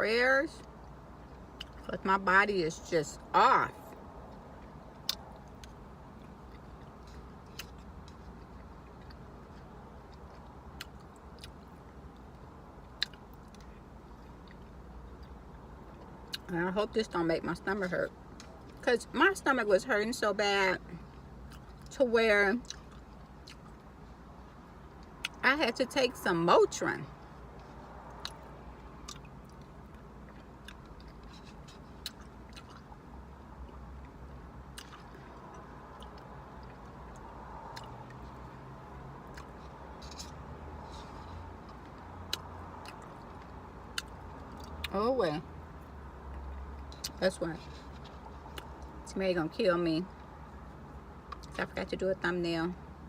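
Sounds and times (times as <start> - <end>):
low steady hum: 0.0 - 53.0
person chewing food: 3.8 - 16.5, 22.6 - 24.0, 27.4 - 33.0, 33.6 - 44.9.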